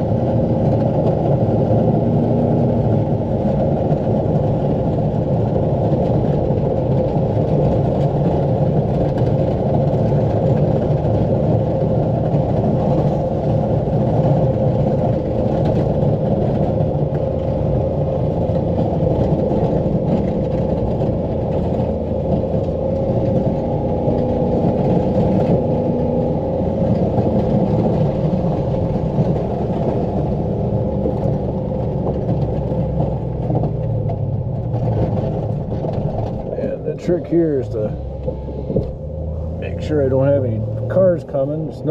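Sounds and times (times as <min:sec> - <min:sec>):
truck engine low drone: 0:00.0 - 0:41.9.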